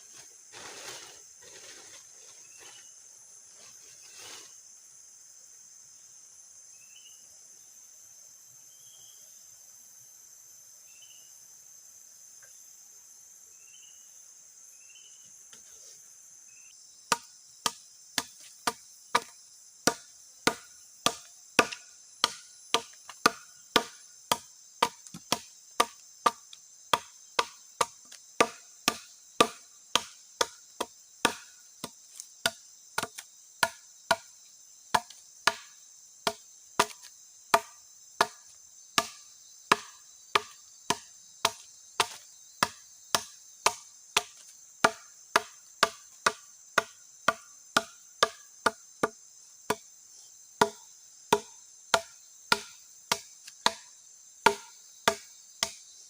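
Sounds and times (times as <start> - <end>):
insects and crickets calling: 0.0 - 56.0
wood chopping blows: 17.1 - 34.3, 34.9 - 49.9, 50.6 - 55.8.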